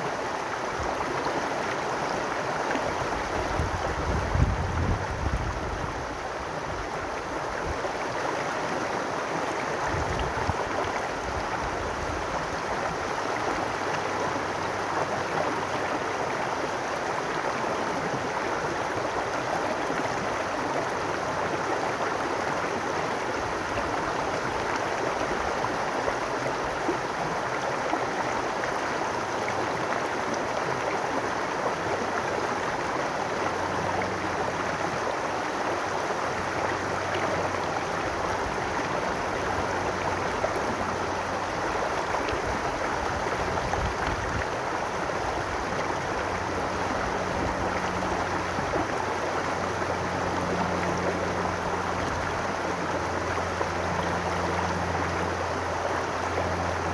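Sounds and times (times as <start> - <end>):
water gurgling over stones: 0.0 - 56.9.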